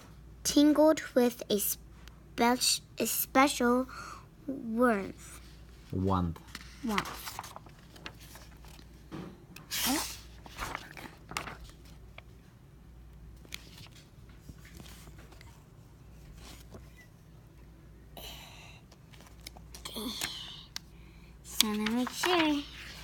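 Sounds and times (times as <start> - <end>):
paper book pages rustling: 5.4 - 9.0, 9.7 - 12.4, 13.4 - 17.0, 19.0 - 20.9, 21.5 - 23.0
short voice sound: 6.0 - 6.4.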